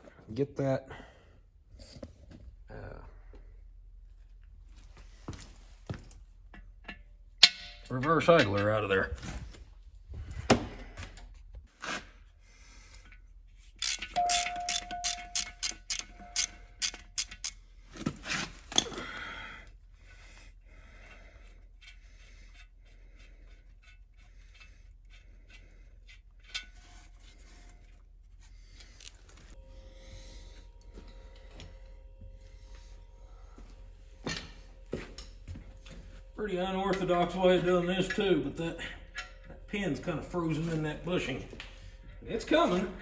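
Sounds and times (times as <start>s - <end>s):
metal tool tapping metal: 6.8s - 8.7s, 13.8s - 17.5s.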